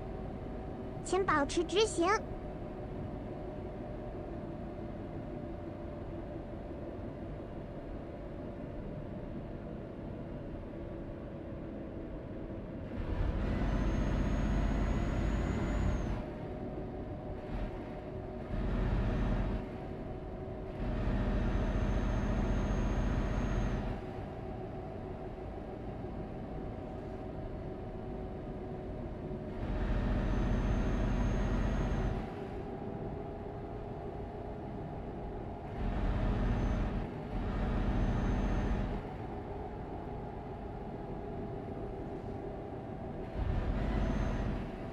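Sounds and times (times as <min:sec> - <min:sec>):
vehicle engine drone: 0:35.3 - 0:44.9.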